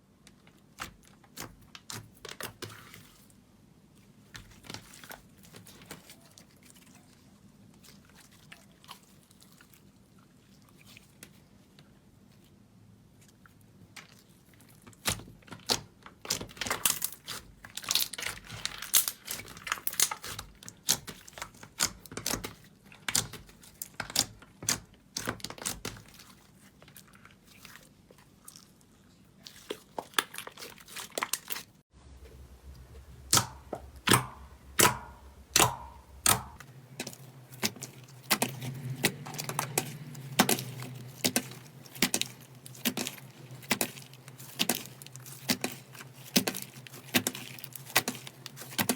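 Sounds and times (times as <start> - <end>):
slime crackling and popping: 16.5 - 23.4.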